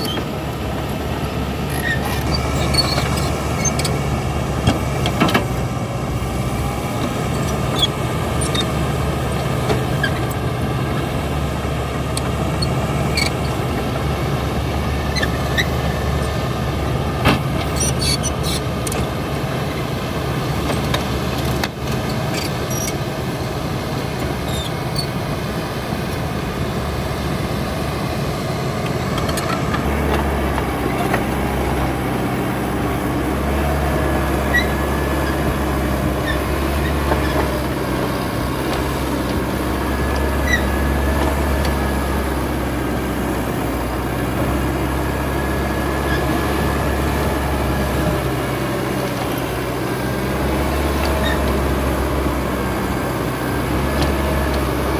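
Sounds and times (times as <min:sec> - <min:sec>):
short high squeaks: 0:00.0 - 0:00.3, 0:01.7 - 0:04.1, 0:07.2 - 0:08.8, 0:12.1 - 0:13.7, 0:15.0 - 0:16.4, 0:17.4 - 0:19.1, 0:22.0 - 0:23.0, 0:24.4 - 0:25.2, 0:33.4 - 0:38.2, 0:40.0 - 0:42.0, 0:50.8 - 0:51.6
bulldozer diesel engine running: 0:00.0 - 0:54.9.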